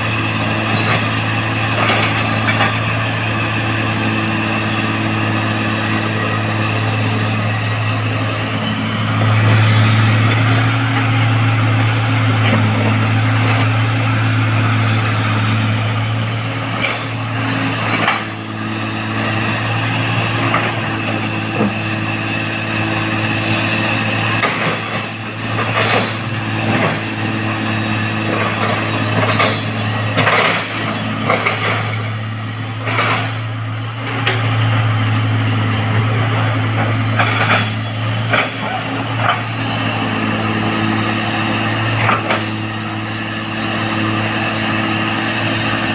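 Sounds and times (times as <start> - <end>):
diesel machinery droning: 0.0 - 45.9
knocks and clanks: 24.4 - 27.2, 28.3 - 32.2, 32.8 - 33.5, 36.8 - 39.5.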